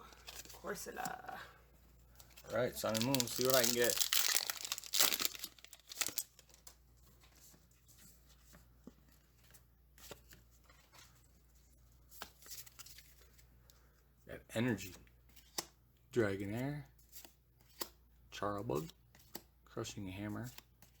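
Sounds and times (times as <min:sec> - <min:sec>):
wrapper rustling and ticks: 0:02.1 - 0:06.8
foil wrapper tearing and crinkling: 0:02.8 - 0:06.7.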